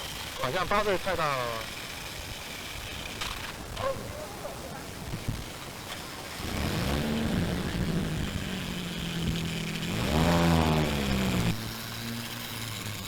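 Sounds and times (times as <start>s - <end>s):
car engine accelerating: 6.4s - 13.0s.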